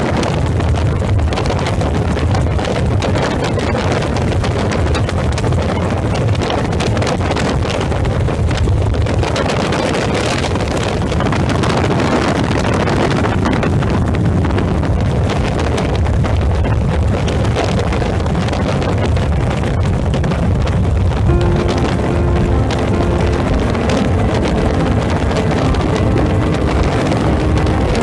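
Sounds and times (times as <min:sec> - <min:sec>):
wind buffeting microphone: 0:00.0 - 0:28.0.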